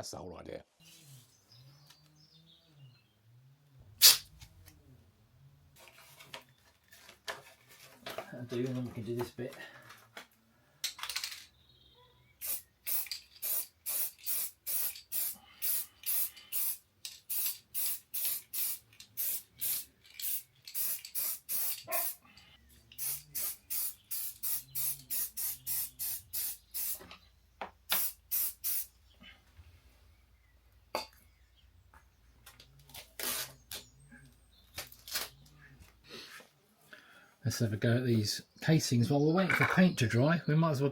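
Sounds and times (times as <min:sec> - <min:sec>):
spray-paint can hissing: 0:04.0 - 0:04.2, 0:12.4 - 0:22.2, 0:23.0 - 0:27.0, 0:27.9 - 0:28.9.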